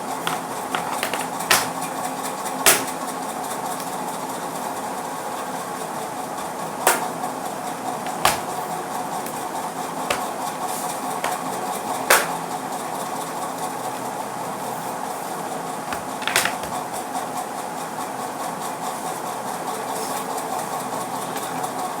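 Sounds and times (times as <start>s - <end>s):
plastic panel clicks and knocks: 0.3s - 1.9s, 2.7s - 3.0s, 6.9s - 7.1s, 8.1s - 8.6s, 10.1s - 10.4s, 11.2s - 11.4s, 12.1s - 12.4s, 15.9s - 16.8s.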